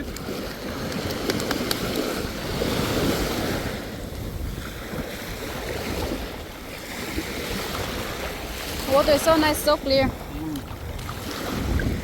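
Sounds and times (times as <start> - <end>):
water lapping and splashing: 0.0 - 12.0
wind buffeting microphone: 0.0 - 12.0.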